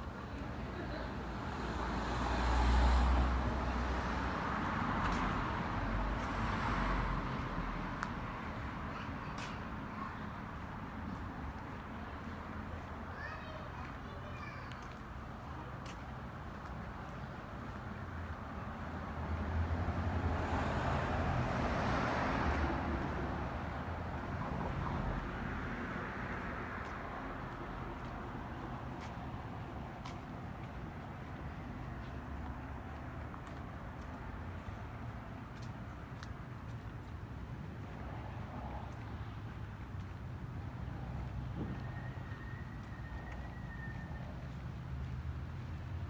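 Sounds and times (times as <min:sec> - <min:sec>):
steady road hum: 0:00.0 - 0:46.0
car passing by: 0:01.4 - 0:08.5, 0:18.9 - 0:30.8.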